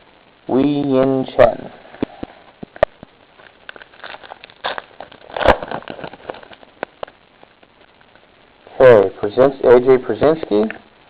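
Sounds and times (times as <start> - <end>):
cards crinkling and rustling: 2.7 - 7.2.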